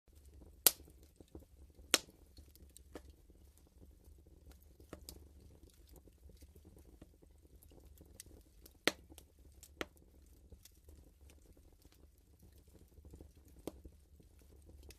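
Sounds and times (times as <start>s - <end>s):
wood fire crackling: 0.1s - 14.9s.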